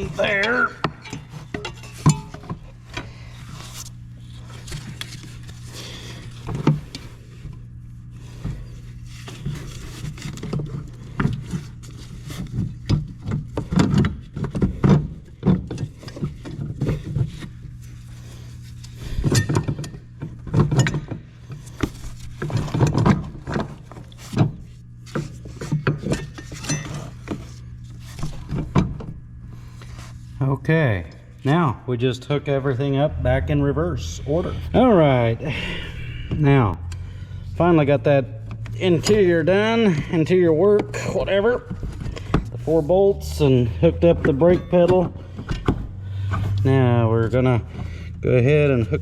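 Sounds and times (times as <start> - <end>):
metal parts and tools clattering: 0.0 - 2.6, 25.6 - 27.6
steady low hum: 0.0 - 49.0.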